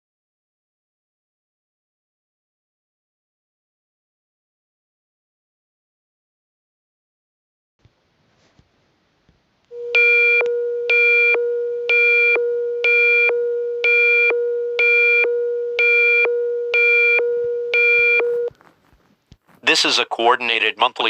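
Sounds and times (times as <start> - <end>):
steady low electronic tone: 9.7 - 18.5
high beeping chord: 9.8 - 18.5.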